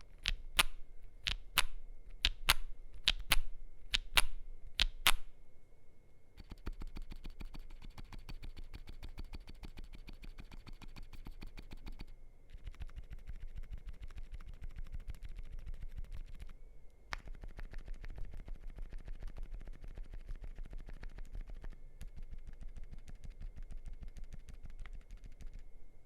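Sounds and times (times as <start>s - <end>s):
fast typing on keyboard: 6.4s - 16.5s, 17.2s - 25.6s.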